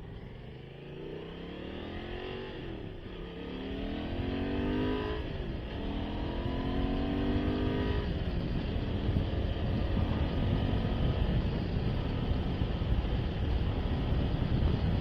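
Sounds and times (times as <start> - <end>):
motorcycle engine accelerating: 0.0 - 15.0
wind noise: 3.8 - 15.0.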